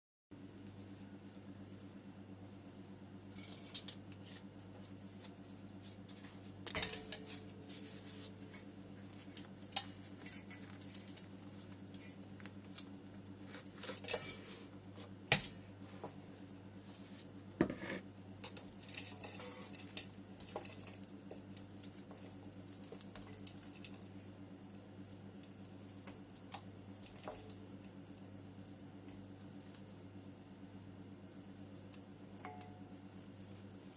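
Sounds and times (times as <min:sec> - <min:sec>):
steady low hum: 0:00.3 - 0:33.9
ceramic pots clinking and scraping: 0:13.8 - 0:14.7, 0:18.8 - 0:21.0.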